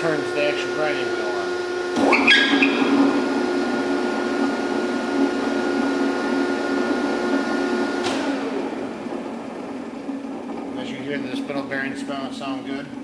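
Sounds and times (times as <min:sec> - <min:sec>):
grinding wheel spinning down: 0:00.0 - 0:07.9
grinder humming: 0:00.0 - 0:08.0.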